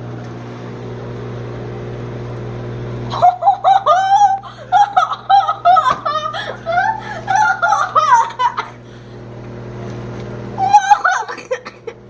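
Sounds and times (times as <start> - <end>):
steady low hum: 0.0 - 12.0
people giggling and squealing: 3.1 - 8.8.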